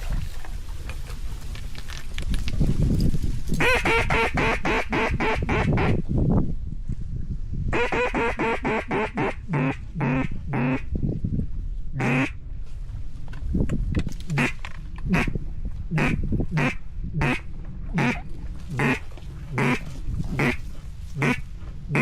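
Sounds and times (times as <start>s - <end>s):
low wind rumble: 0.0s - 22.0s
duck call quacks: 3.6s - 6.0s, 7.8s - 10.8s, 12.0s - 12.3s, 14.3s - 15.3s, 16.0s - 17.4s, 18.0s - 18.2s, 18.8s - 19.0s, 19.6s - 19.8s, 20.4s - 20.6s, 21.2s - 22.0s.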